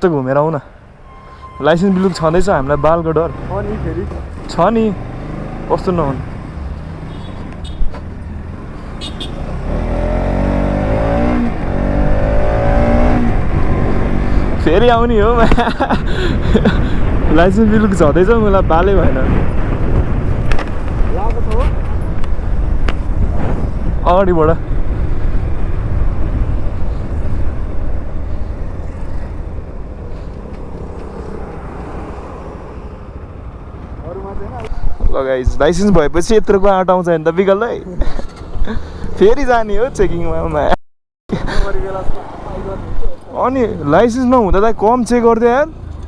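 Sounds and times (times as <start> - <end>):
motorcycle engine rumble: 2.6 - 35.1
motorcycle engine accelerating: 8.4 - 14.8
wind rush on microphone: 10.8 - 33.7.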